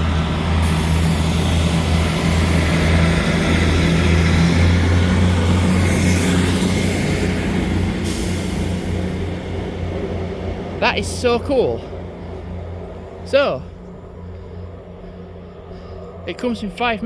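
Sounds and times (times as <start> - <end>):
rushing noise: 0.0 - 17.0
train engine low drone: 0.0 - 17.0.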